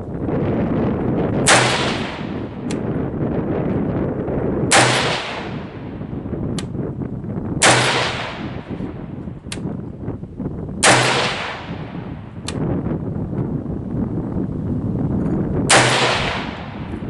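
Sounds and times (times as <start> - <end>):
rifle shots with ringing tail: 1.4 - 2.9, 4.7 - 6.3, 7.6 - 9.2, 10.8 - 12.4, 15.7 - 17.0.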